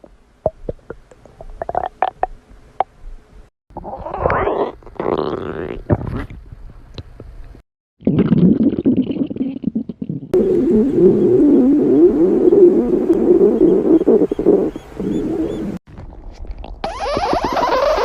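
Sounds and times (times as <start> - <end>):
stomach growling and gurgling: 3.7 - 6.5, 8.0 - 18.0.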